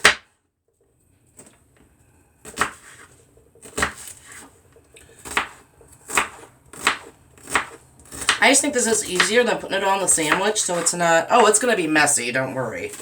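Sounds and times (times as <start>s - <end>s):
knife chopping on cutting board: 2.5s - 4.5s, 5.2s - 8.4s.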